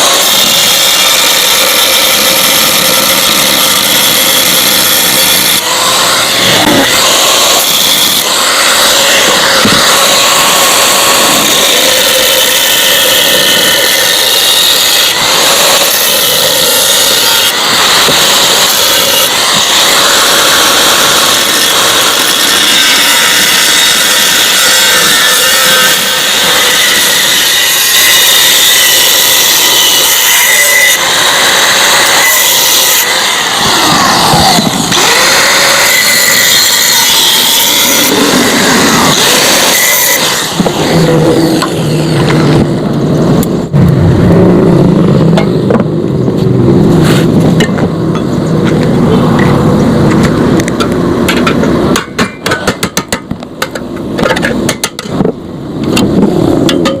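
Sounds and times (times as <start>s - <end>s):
angle grinder cutting steel: 0.0s - 43.9s.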